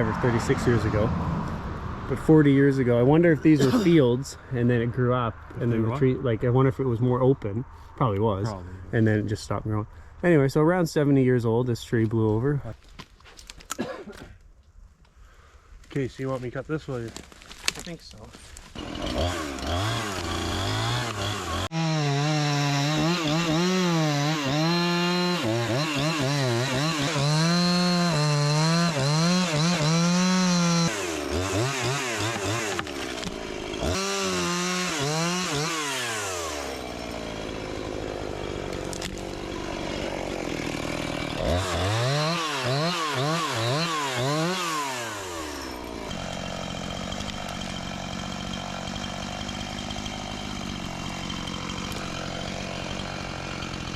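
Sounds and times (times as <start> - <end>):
chainsaw cutting log: 3.5 - 4.0, 18.5 - 53.9.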